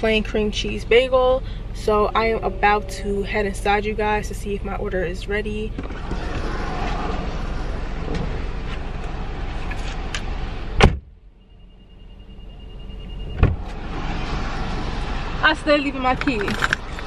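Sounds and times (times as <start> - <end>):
car door slamming: 10.8 - 11.1, 13.3 - 13.8.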